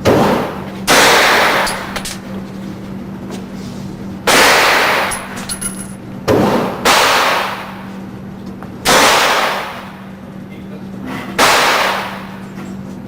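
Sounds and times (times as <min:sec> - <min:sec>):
gunshots echoing: 0:00.1 - 0:02.0, 0:04.3 - 0:05.4, 0:06.3 - 0:07.9, 0:08.8 - 0:10.1, 0:11.4 - 0:12.4.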